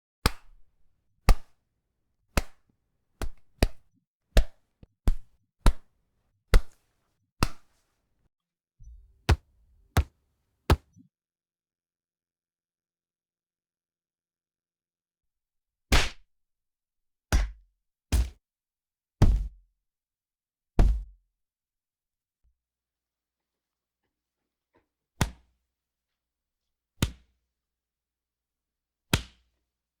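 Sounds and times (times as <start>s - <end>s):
punch impacts with low thud: 17.3s - 18.4s, 19.2s - 19.6s, 20.8s - 21.2s.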